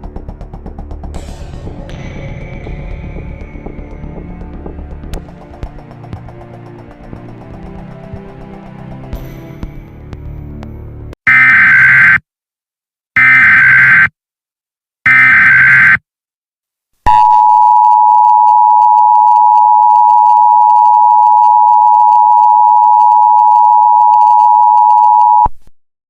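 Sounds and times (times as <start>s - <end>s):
warbling data tone screech: 11.3s - 12.2s, 13.2s - 14.1s, 15.1s - 16.0s.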